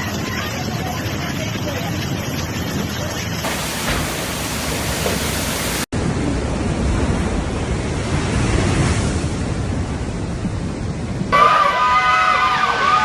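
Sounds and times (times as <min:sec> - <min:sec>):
heavy rain: 0:03.4 - 0:05.9
rushing wind: 0:03.4 - 0:11.4.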